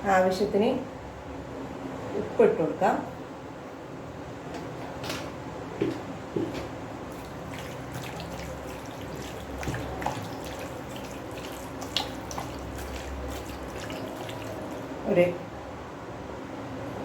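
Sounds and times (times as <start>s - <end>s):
spoon squelching in wet paste: 7.1s - 15.0s.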